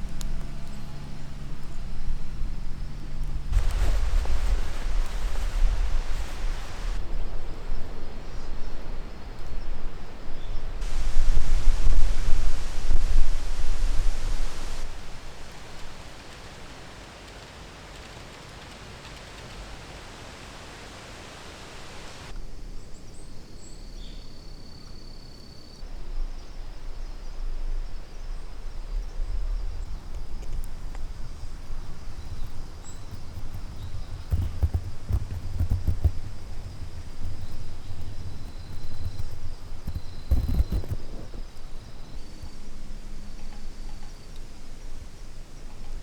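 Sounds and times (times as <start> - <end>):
rustling: 0.0 - 7.7, 10.7 - 22.3, 27.3 - 45.0
steady rushing noise: 3.4 - 7.1, 10.8 - 22.3, 28.4 - 41.9.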